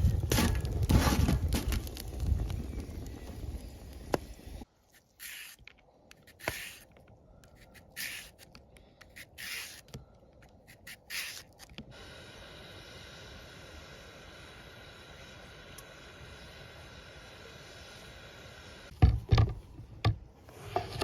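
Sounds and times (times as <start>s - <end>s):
steady hiss: 11.1s - 18.9s.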